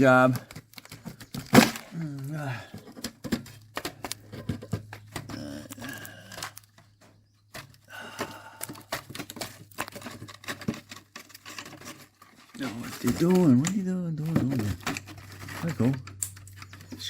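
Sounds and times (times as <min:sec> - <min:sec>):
hand tools clicking and rattling: 0:07.5 - 0:17.0.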